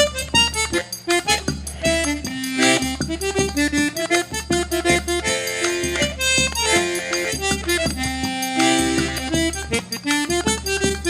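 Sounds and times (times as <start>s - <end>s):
accordion melody: 0.0s - 11.0s.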